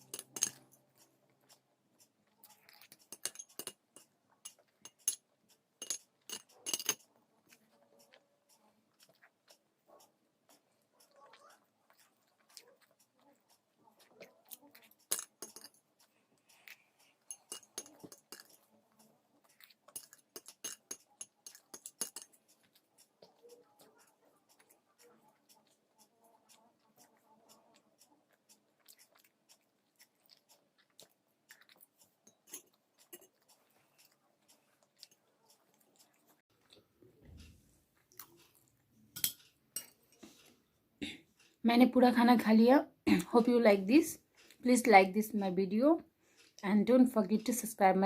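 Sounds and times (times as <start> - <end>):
spoon clinking against plate: 0.0 - 1.1, 2.4 - 7.1, 14.7 - 15.8, 16.6 - 18.7, 19.5 - 22.8, 32.4 - 34.2, 39.2 - 40.1
faint chewing: 0.0 - 41.6, 42.9 - 47.8.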